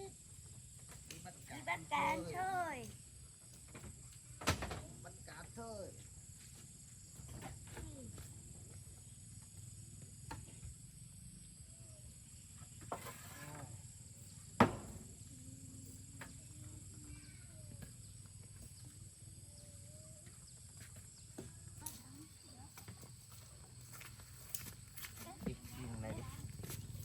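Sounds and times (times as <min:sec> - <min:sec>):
faint animal calls: 0:19.3 - 0:20.8.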